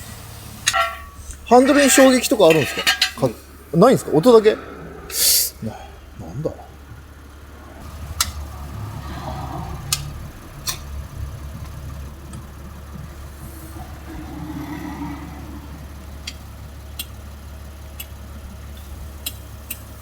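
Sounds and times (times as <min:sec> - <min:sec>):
car engine idling: 0:00.0 - 0:20.0
sharp suspension clicks: 0:06.9 - 0:20.0.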